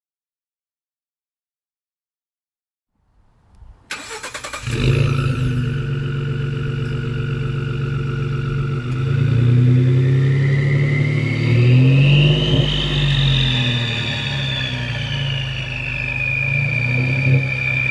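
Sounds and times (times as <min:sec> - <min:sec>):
truck engine starting and idling: 0:03.5 - 0:17.9
engine revving: 0:03.9 - 0:17.9
turbo whistle: 0:10.2 - 0:17.9.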